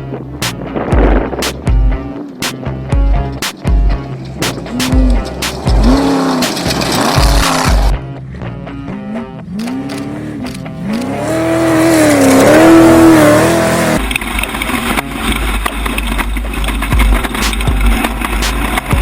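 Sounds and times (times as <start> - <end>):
engine revving: 0.0 - 19.0
rough engine rumbling with rattles: 0.0 - 19.0.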